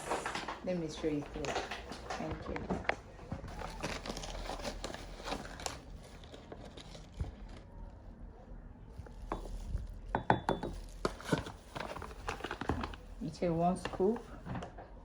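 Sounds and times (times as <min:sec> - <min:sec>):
kitchen utensils clinking: 0:00.0 - 0:02.4.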